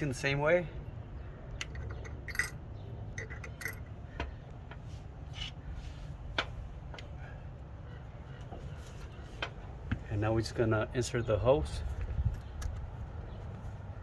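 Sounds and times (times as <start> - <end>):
metal hose clamps clinking: 1.6 - 2.6, 3.2 - 3.9.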